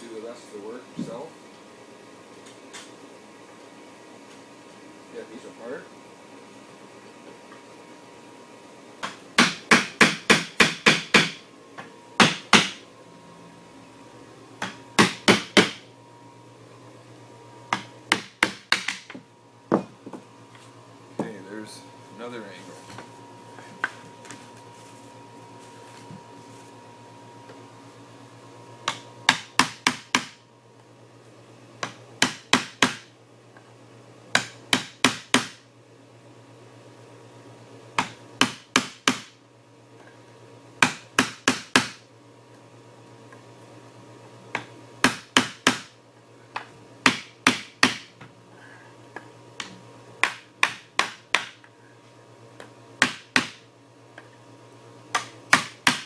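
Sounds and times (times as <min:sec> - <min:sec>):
hammer rapping on wood: 0:09.4 - 0:11.4, 0:12.2 - 0:12.8, 0:14.6 - 0:15.8, 0:17.7 - 0:19.2, 0:31.8 - 0:33.0, 0:34.4 - 0:35.6, 0:47.0 - 0:48.1, 0:53.0 - 0:53.6, 0:55.2 - 0:56.0.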